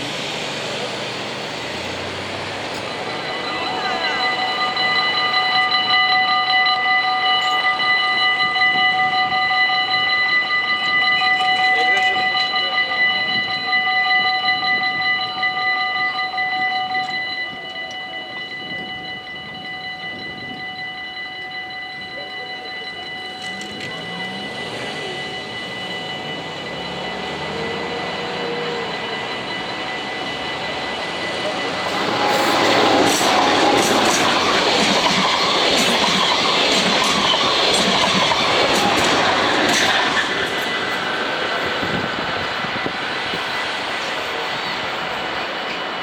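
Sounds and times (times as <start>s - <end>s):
train wheel and running noise: 0.0s - 46.0s
level crossing bells ringing: 1.3s - 46.0s.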